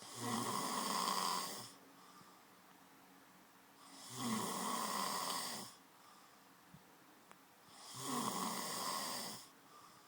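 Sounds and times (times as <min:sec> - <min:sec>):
man snoring: 0:00.0 - 0:01.8, 0:03.8 - 0:05.8, 0:07.7 - 0:09.5
faint breathing: 0:01.2 - 0:02.6, 0:05.3 - 0:06.6, 0:09.1 - 0:10.0.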